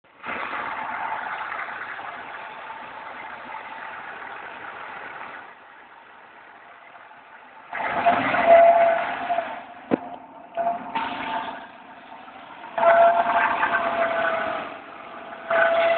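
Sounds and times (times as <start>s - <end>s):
car engine revving: 7.7s - 15.9s.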